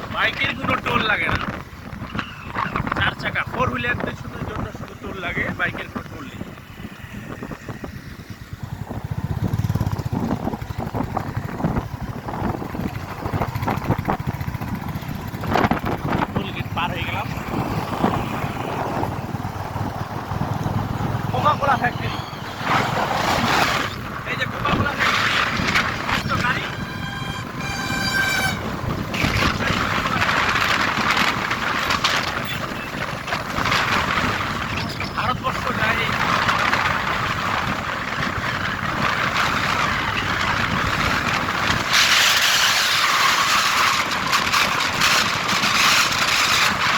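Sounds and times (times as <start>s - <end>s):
motorbike road and engine rumble: 0.0s - 46.9s
wind buffeting microphone: 0.0s - 46.9s
motorcycle engine running: 5.8s - 23.0s
vehicle horn: 26.6s - 28.8s.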